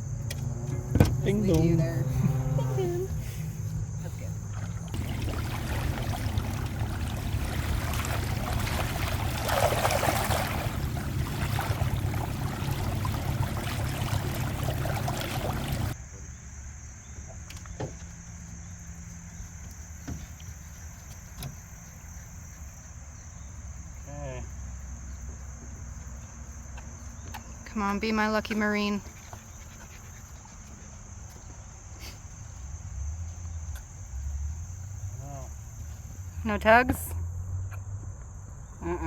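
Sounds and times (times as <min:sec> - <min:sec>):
boat motor running: 0:00.0 - 0:16.0
water and wind noise: 0:00.0 - 0:16.0
sharp knocks: 0:00.8 - 0:01.2.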